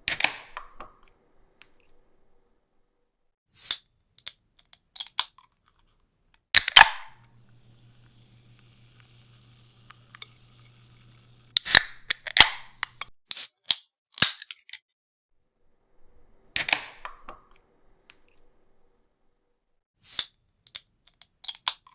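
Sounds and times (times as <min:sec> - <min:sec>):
can pull-tab pops: 0:00.1 - 0:00.9.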